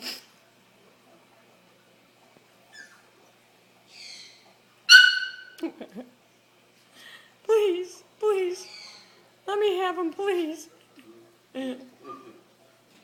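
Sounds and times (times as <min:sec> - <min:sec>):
parrots calling: 0:02.7 - 0:03.1, 0:03.9 - 0:05.6, 0:08.6 - 0:09.3
small dog crying: 0:04.9 - 0:05.6.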